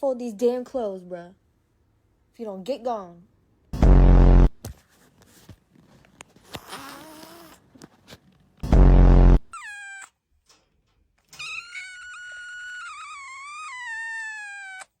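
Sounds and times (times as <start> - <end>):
loud low buzzing: 3.8 - 4.6, 8.6 - 9.5
cat meowing: 9.5 - 10.2, 11.4 - 15.0
cat yowling: 9.5 - 10.2, 11.4 - 15.0.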